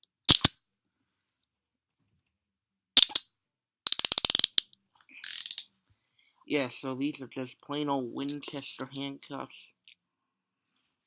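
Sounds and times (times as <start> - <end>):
handcuff ratchet clicking: 3.9 - 5.6.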